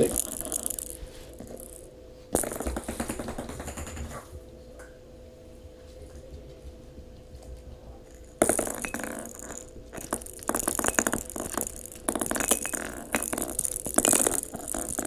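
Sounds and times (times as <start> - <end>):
ball rattling and clattering: 0.0 - 4.4, 7.4 - 15.0.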